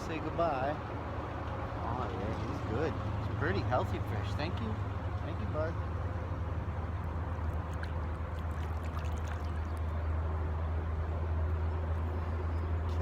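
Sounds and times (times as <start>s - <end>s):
steady low hum: 0.0s - 13.0s
water splashing and trickling: 6.6s - 13.0s.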